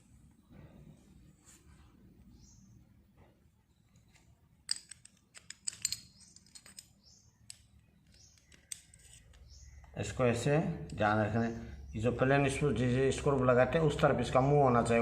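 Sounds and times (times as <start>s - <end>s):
small metal parts clicking: 4.6s - 9.6s.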